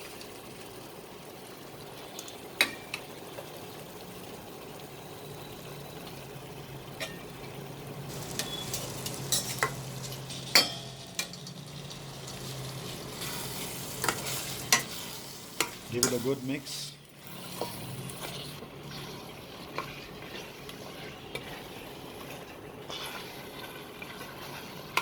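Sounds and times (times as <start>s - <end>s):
chicken sizzling in oil: 0.0s - 25.0s
utensil scraping metal cooker: 8.1s - 25.0s.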